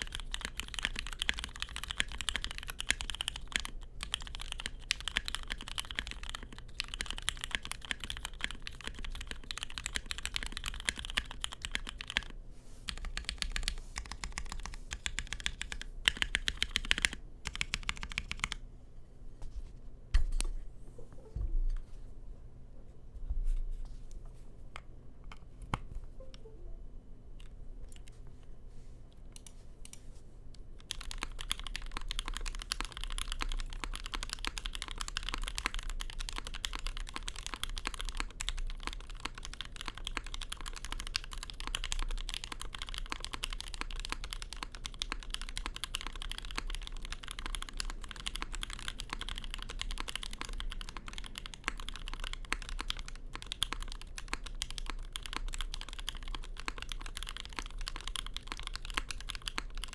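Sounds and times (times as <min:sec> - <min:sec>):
mechanical keyboard typing: 0:00.0 - 0:18.6, 0:30.8 - 0:59.9.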